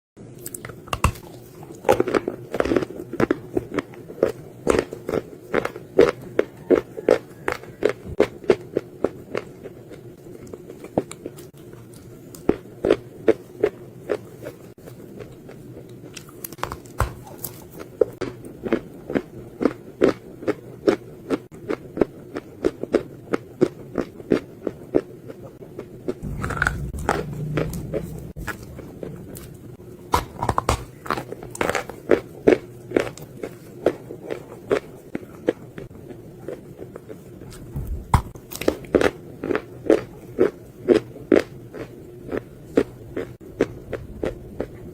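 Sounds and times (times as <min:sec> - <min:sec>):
chewing crunchy clay: 0:00.4 - 0:44.9
low rumble: 0:26.2 - 0:30.0.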